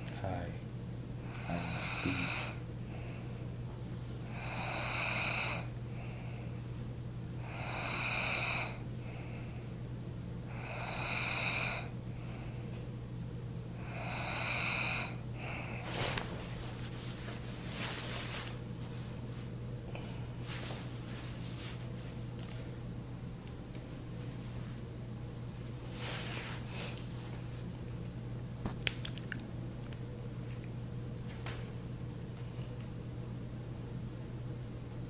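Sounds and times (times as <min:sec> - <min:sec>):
low electrical hum: 0:00.0 - 0:35.0
man snoring: 0:01.2 - 0:02.6, 0:04.3 - 0:05.7, 0:07.4 - 0:08.8, 0:10.5 - 0:11.9, 0:13.8 - 0:15.7
rustling: 0:15.8 - 0:19.5, 0:20.4 - 0:22.2.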